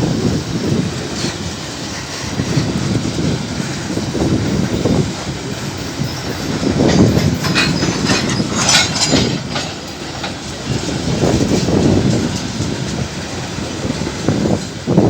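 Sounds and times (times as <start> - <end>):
freight train rumbling: 0.0 - 15.0
wheels clacking over rail joints: 0.0 - 15.0
metallic screech: 4.6 - 9.8.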